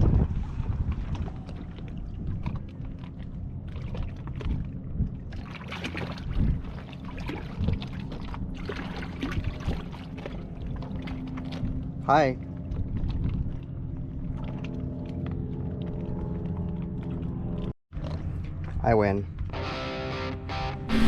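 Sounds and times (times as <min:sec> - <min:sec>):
wind noise: 0:00.0 - 0:05.4, 0:06.0 - 0:09.9
water splashing: 0:00.0 - 0:11.8.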